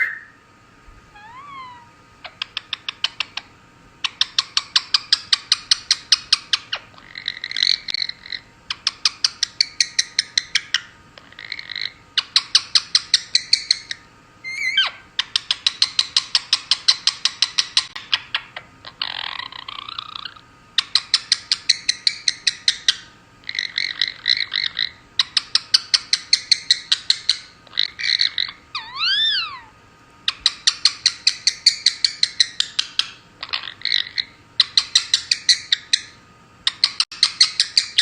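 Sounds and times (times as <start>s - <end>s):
parakeet warbled notes: 0.0s - 0.4s, 1.2s - 1.9s, 28.0s - 29.7s
parakeet whistle: 0.0s - 0.4s, 1.2s - 1.9s, 13.2s - 15.0s, 19.0s - 29.7s
parakeet clicking croak: 2.3s - 3.5s.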